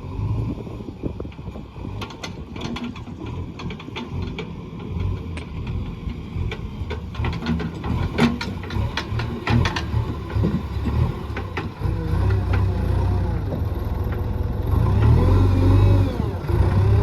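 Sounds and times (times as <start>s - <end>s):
diesel engine under load: 0.0s - 17.0s
metallic clanks and rattles: 2.0s - 14.3s.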